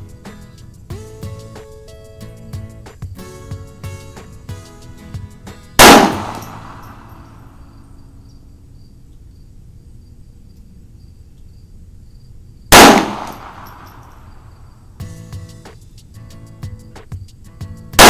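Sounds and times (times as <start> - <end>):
pistol shots: 5.8 - 7.1, 12.7 - 13.9.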